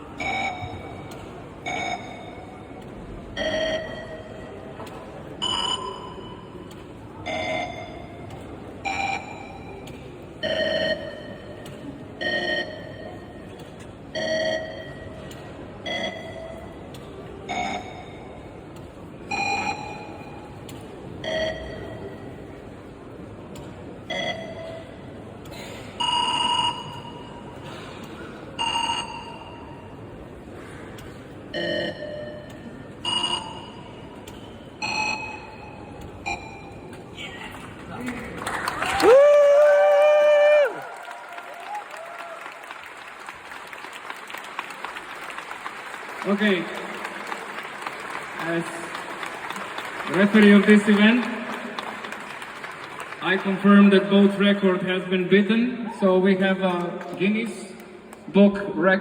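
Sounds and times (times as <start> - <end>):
high-speed morse code tones: 31.6 - 34.0.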